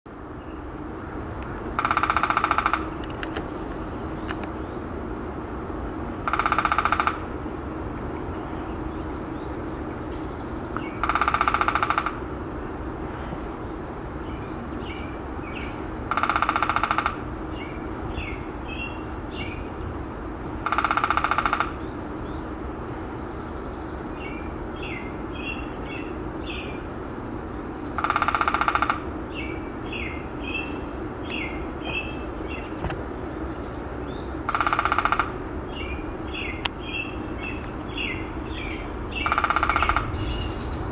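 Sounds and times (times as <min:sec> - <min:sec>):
woodpecker drumming on wood: 0:01.7 - 0:03.5, 0:06.2 - 0:07.4, 0:10.8 - 0:12.3, 0:16.1 - 0:17.4, 0:20.4 - 0:22.0, 0:28.0 - 0:29.2, 0:34.4 - 0:35.4, 0:39.1 - 0:40.3
birds whistling and chipping: 0:03.0 - 0:04.9, 0:06.9 - 0:11.3, 0:12.8 - 0:40.9.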